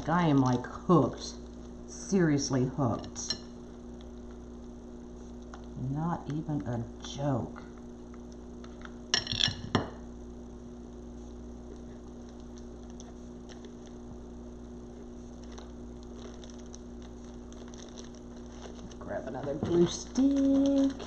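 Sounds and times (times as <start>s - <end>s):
low electrical hum: 0.0s - 21.0s
ticks and rustles of craft materials: 15.2s - 21.0s.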